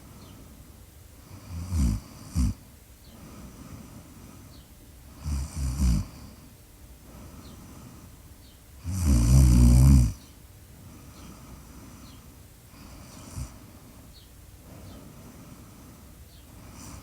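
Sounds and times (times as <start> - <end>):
quiet breathing: 0.0 - 9.0, 9.7 - 17.0
person snoring: 1.3 - 2.6, 5.2 - 6.2, 8.8 - 10.2.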